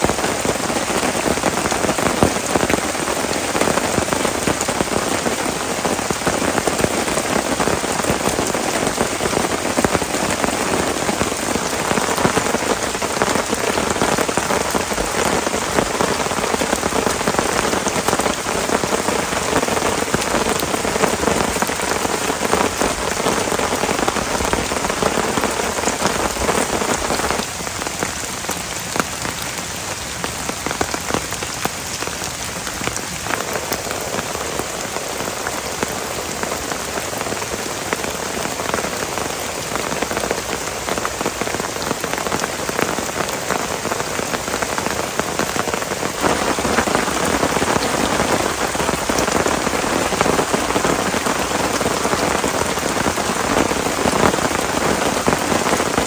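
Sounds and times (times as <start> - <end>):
heavy rain pouring: 0.0 - 56.0.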